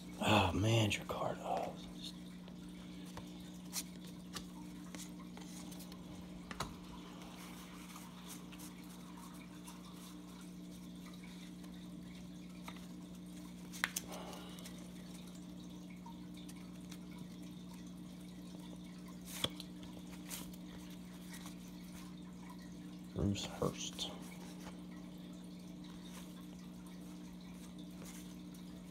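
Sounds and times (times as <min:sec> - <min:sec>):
cards clicking and rustling: 0:03.0 - 0:09.0, 0:12.5 - 0:14.8, 0:19.2 - 0:22.0.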